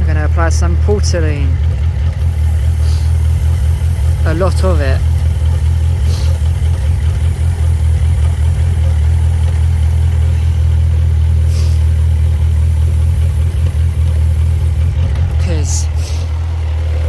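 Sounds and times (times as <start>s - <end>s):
motorcycle engine idling: 0.0s - 17.0s
short hiss: 2.4s - 14.9s, 15.6s - 16.5s.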